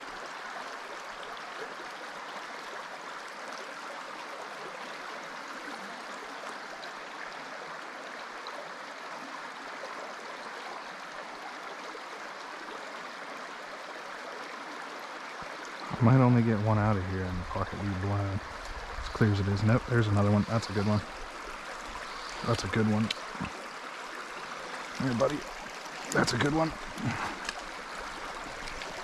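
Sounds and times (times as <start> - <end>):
stream flowing over rocks: 0.0 - 29.0.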